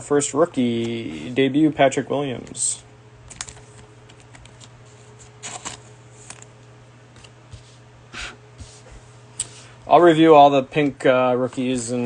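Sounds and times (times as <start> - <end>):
cards being flipped through: 3.3 - 6.5.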